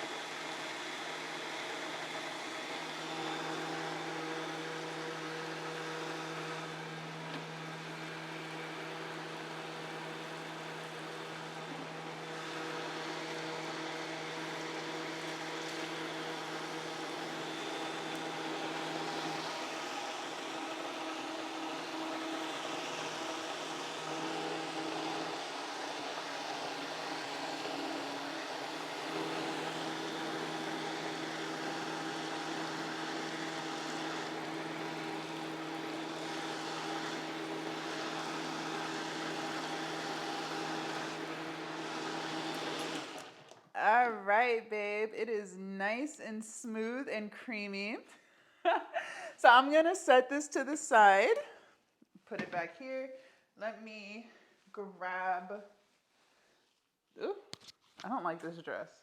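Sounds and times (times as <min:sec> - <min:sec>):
blender motor running: 0:00.0 - 0:43.7.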